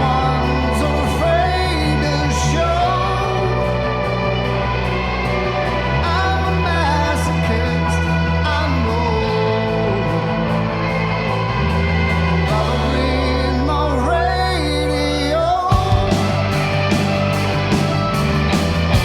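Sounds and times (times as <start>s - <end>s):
man singing: 0.0s - 4.6s, 5.8s - 11.2s, 12.3s - 16.6s
bass notes: 0.0s - 19.0s
electric guitar: 0.0s - 19.0s.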